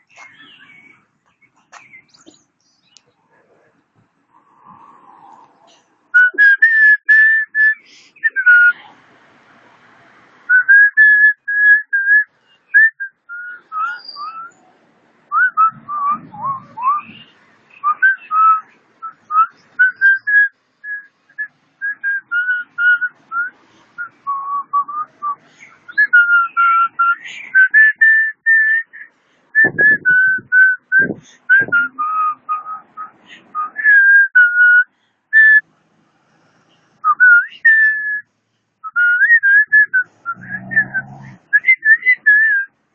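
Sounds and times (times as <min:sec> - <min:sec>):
person whistling a tune: 0:29.6 - 0:35.6, 0:37.0 - 0:38.2, 0:38.9 - 0:42.7.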